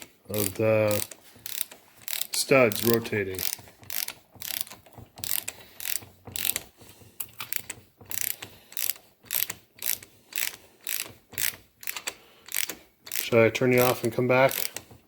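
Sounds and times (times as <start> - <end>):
ratchet wrench clicking: 0.0 - 15.0.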